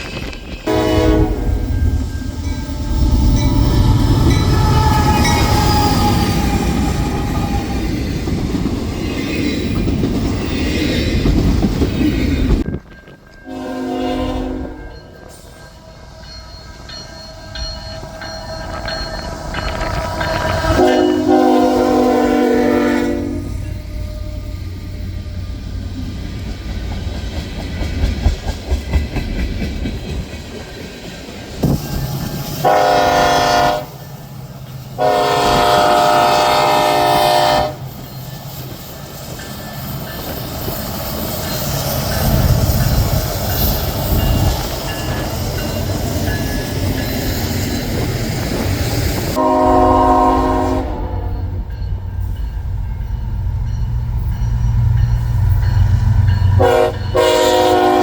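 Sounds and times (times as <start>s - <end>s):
train rumbling on rails: 0.0s - 58.0s
train horn blasts: 0.7s - 1.8s, 13.4s - 15.1s, 20.0s - 25.2s, 32.6s - 34.0s, 35.0s - 37.8s, 49.3s - 51.5s, 56.6s - 58.0s.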